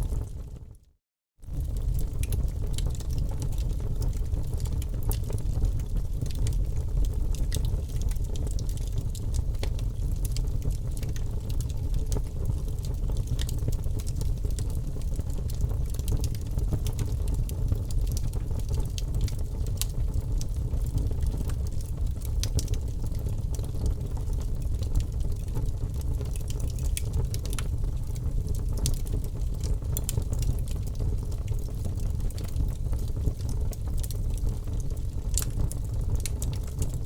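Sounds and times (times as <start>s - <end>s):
fire rumbling: 1.4s - 37.0s
logs crackling and popping: 1.6s - 37.0s.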